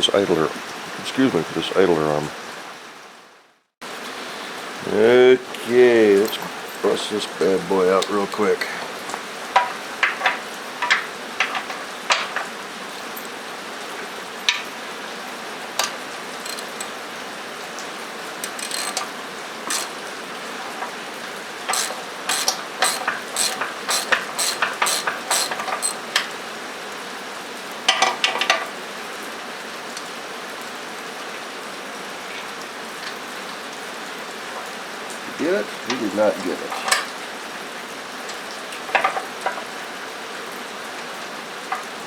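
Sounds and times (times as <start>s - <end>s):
rain on a metal roof: 0.0s - 42.0s
ratchet wrench clicking: 15.8s - 17.0s, 18.4s - 20.0s, 21.7s - 26.3s.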